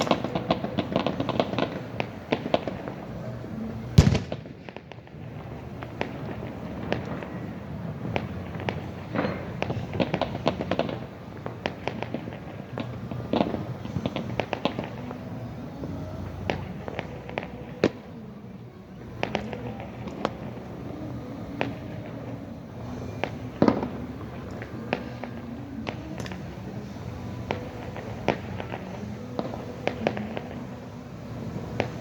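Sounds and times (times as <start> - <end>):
fireworks popping and banging: 0.0 - 32.0.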